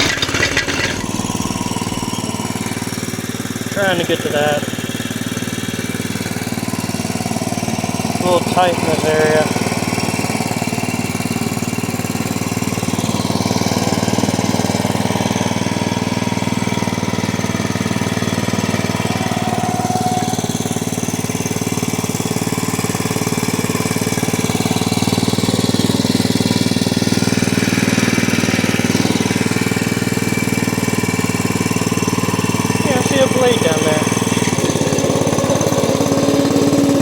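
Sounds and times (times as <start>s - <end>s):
small engine droning: 0.0s - 37.0s.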